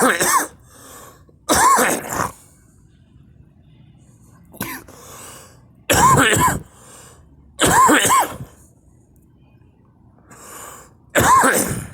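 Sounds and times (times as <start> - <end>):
person coughing: 0.0 - 0.6, 1.5 - 2.4, 4.6 - 4.9, 5.9 - 6.7, 7.6 - 8.5, 11.2 - 11.9.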